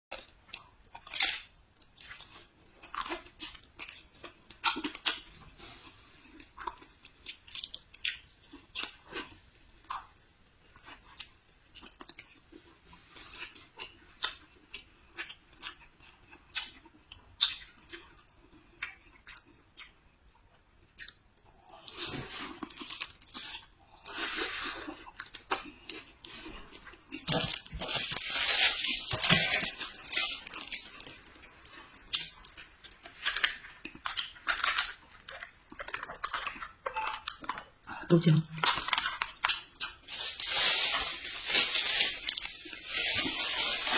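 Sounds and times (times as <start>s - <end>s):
chewing crisp food: 0.1s - 43.9s.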